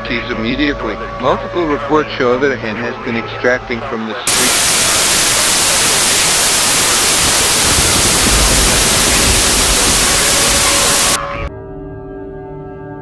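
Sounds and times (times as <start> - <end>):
broadcast static hiss: 4.3 - 11.2.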